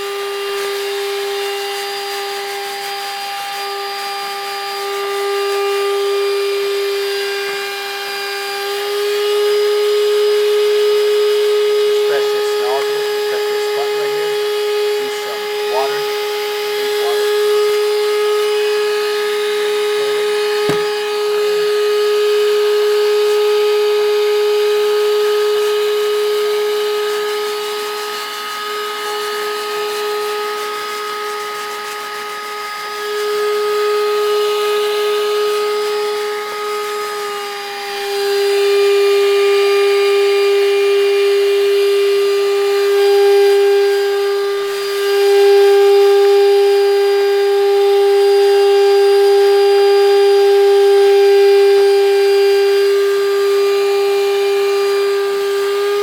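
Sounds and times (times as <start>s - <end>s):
suction motor whining: 0.4s - 29.2s.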